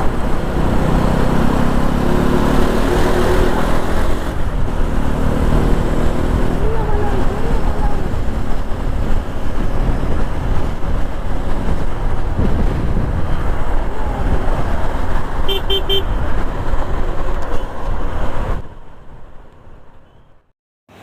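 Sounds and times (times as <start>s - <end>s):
wind rush: 0.0s - 19.4s
motorcycle engine and road noise: 0.0s - 21.0s
horn toots: 15.4s - 16.2s.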